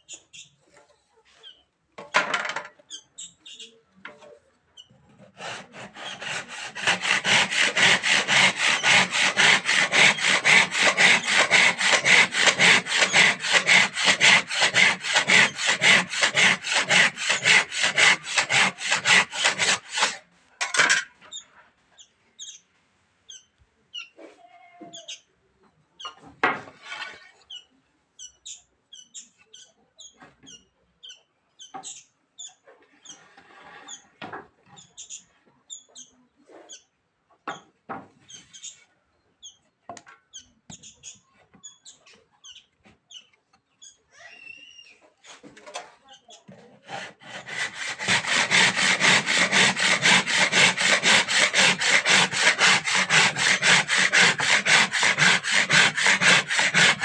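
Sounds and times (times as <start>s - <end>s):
handsaw cutting wood: 5.2s - 20.2s, 46.8s - 57.0s.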